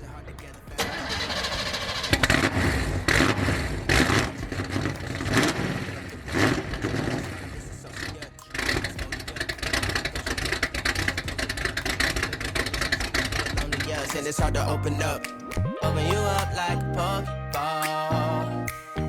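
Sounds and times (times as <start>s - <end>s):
car engine revving: 0.1s - 15.2s.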